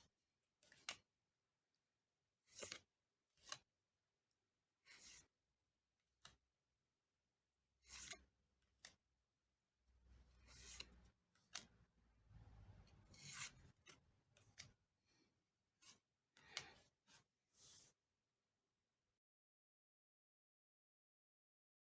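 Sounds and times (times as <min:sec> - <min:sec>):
cards sliding and rubbing: 0:07.8 - 0:08.2, 0:10.3 - 0:11.7, 0:13.1 - 0:14.7, 0:15.8 - 0:18.0.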